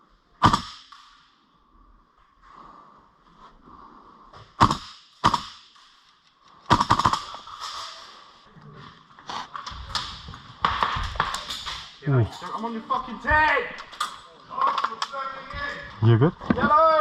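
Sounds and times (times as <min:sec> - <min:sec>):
airsoft rifle shots: 0:00.4 - 0:01.3, 0:04.6 - 0:05.9, 0:06.7 - 0:07.8.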